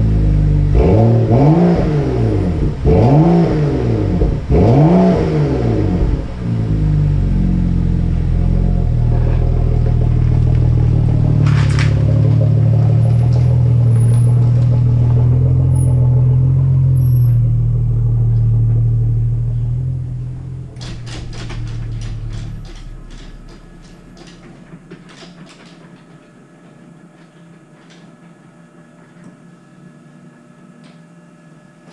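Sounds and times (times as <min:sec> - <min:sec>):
car engine idling: 0:00.0 - 0:30.8
clicks: 0:20.7 - 0:26.4.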